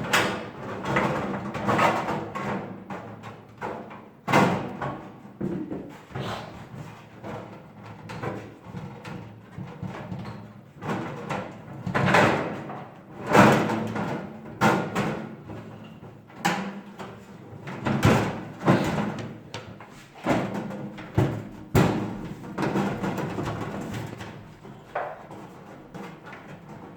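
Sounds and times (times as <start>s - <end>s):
sheet metal knocks and clanks: 0.1s - 6.2s, 16.4s - 26.9s.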